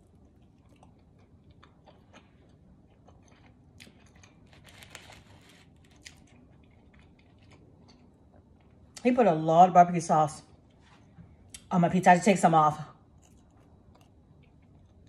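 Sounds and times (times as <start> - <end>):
chewing pizza crust: 0.0 - 9.1, 13.0 - 15.0.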